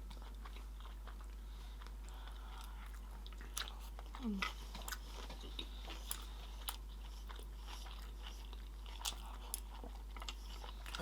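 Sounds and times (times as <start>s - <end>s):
chewing food: 0.0s - 11.0s
low steady hum: 0.0s - 11.0s.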